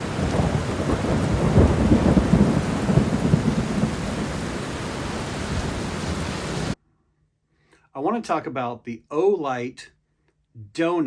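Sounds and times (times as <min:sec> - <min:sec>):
steady rain: 0:00.0 - 0:06.8
thunder rumbling: 0:00.0 - 0:06.8.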